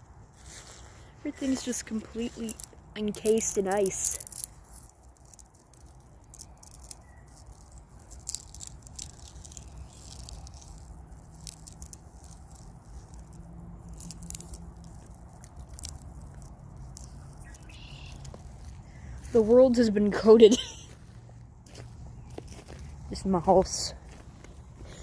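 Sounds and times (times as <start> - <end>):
steady low rumble: 0.0 - 25.0
ice crackling and clicking: 1.3 - 21.0.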